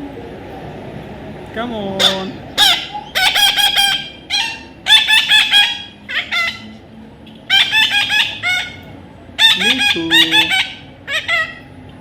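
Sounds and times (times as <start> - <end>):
parrot squawking: 2.0 - 6.8, 7.5 - 11.7.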